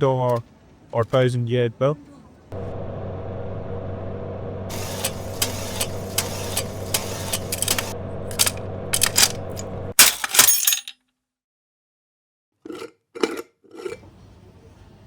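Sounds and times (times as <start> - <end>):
vending machine humming: 2.5 - 10.6
mechanism clicking: 4.7 - 10.6
machine clatter: 4.7 - 10.8.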